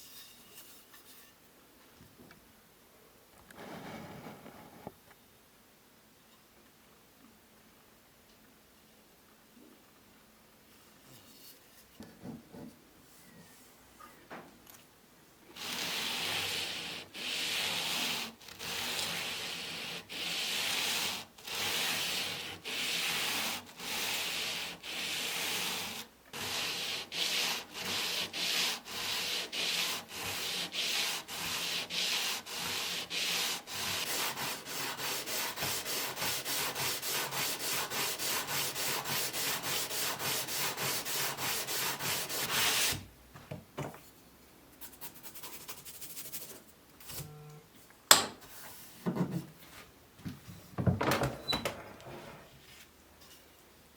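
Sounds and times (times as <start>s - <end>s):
hand sanding strokes: 15.6s - 43.0s.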